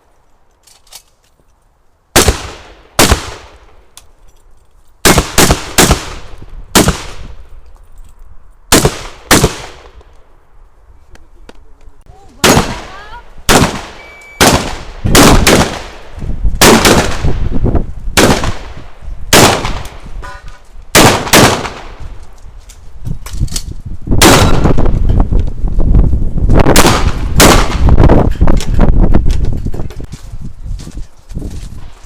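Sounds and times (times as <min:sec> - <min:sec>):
shotgun shots: 0:02.2 - 0:03.6, 0:05.0 - 0:07.3, 0:08.7 - 0:10.0, 0:12.4 - 0:17.4, 0:18.2 - 0:20.0, 0:20.9 - 0:22.0, 0:24.2 - 0:24.9, 0:26.7 - 0:28.0.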